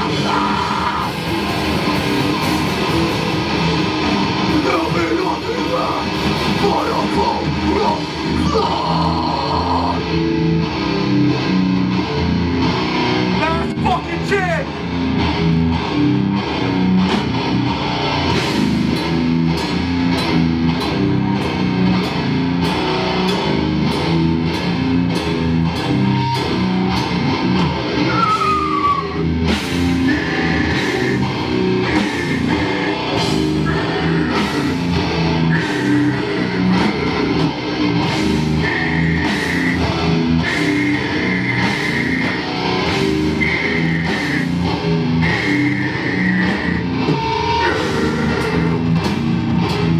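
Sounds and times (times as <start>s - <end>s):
distorted electric guitar riffing: 0.0s - 49.9s
pounding drum kit: 0.0s - 49.9s.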